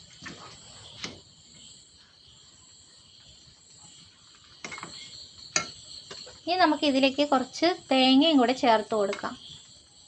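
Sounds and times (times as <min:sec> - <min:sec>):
crickets chirring: 0:00.0 - 0:10.0
spoon scraping a pan: 0:04.6 - 0:06.4.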